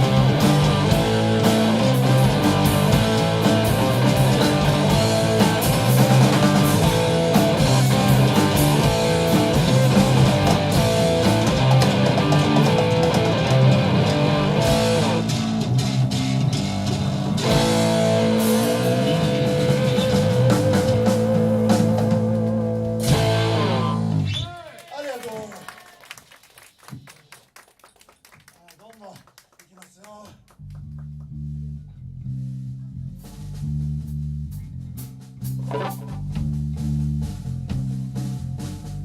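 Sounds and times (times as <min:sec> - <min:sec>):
live rock band music: 0:00.0 - 0:24.4, 0:35.0 - 0:39.0.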